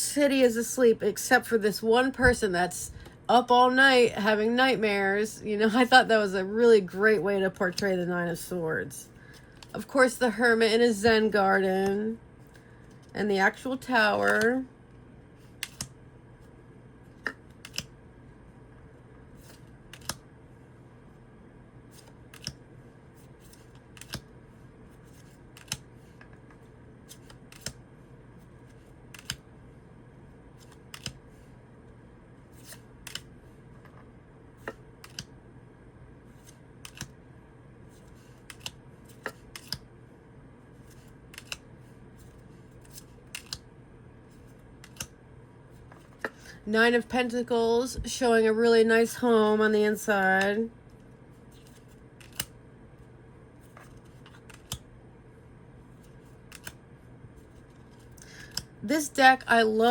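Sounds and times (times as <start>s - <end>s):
faint steady hum: 0.0s - 59.9s
cards clicking being turned: 15.4s - 15.9s, 17.2s - 17.9s, 19.4s - 20.2s, 21.9s - 22.6s, 23.4s - 24.3s, 25.0s - 26.4s, 27.1s - 27.8s, 28.7s - 29.4s, 30.6s - 31.2s, 32.6s - 33.3s, 34.6s - 35.3s, 36.4s - 37.1s, 38.0s - 39.8s, 40.8s - 41.6s, 42.2s - 43.6s, 44.4s - 45.1s, 51.5s - 52.5s, 53.6s - 54.8s, 56.0s - 56.8s, 57.4s - 58.7s.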